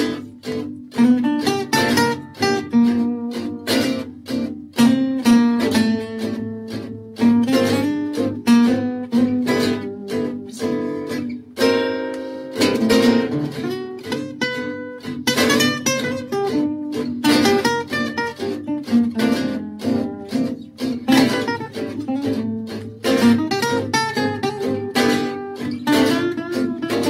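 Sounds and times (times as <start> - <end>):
acoustic guitar music: 0.0 - 27.0.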